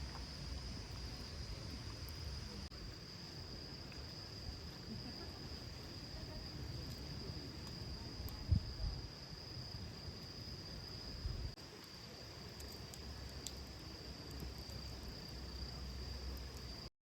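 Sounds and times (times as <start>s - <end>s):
high insect drone: 0.0s - 16.9s.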